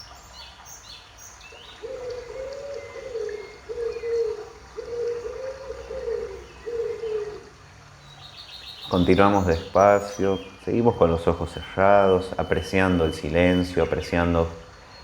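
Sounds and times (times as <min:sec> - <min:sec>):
small birds chirping: 0:00.0 - 0:15.0
dove cooing: 0:01.7 - 0:07.7, 0:08.9 - 0:14.7.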